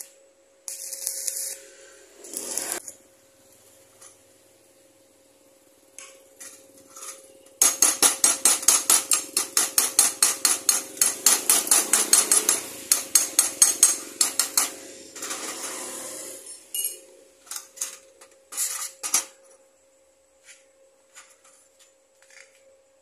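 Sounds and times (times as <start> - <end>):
hammer striking metal: 7.6 - 15.6.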